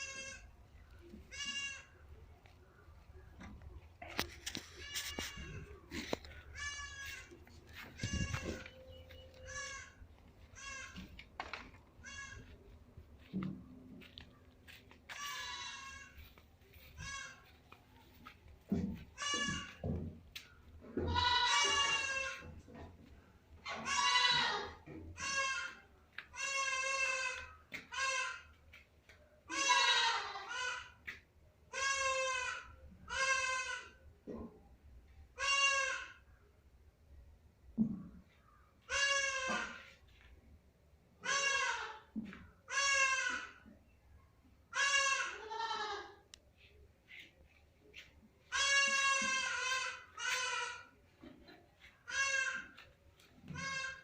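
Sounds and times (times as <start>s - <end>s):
young goat bleating: 0.0s - 2.0s, 4.0s - 11.2s, 12.0s - 13.4s, 14.7s - 18.3s, 19.0s - 19.8s, 21.0s - 22.6s, 23.6s - 28.6s, 29.5s - 34.0s, 35.3s - 36.2s, 38.8s - 40.0s, 41.2s - 42.1s, 42.7s - 43.7s, 44.7s - 46.4s, 48.4s - 50.9s, 52.0s - 54.0s.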